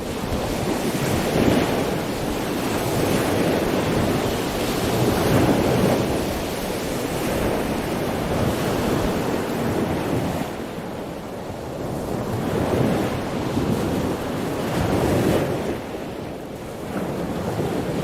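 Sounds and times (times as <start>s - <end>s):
ocean waves washing: 0.0s - 18.0s
wind noise on microphone: 0.0s - 18.0s.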